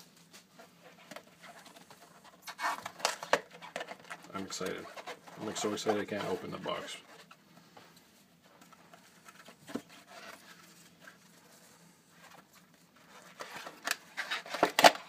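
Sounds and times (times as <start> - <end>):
cardboard tearing: 1.4 - 6.8.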